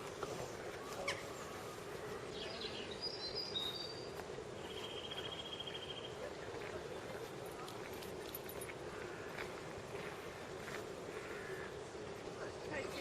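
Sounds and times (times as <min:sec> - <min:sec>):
small birds chirping: 0:00.0 - 0:07.0
background noise: 0:00.0 - 0:13.0.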